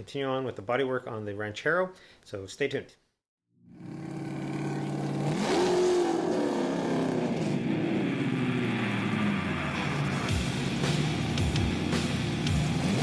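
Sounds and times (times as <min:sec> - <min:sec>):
car engine revving: 0:03.8 - 0:13.0.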